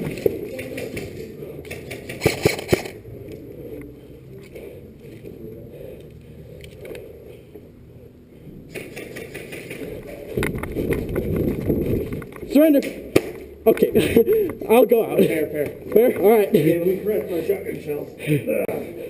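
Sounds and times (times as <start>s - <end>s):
gear rustling against microphone: 9.2s - 12.7s.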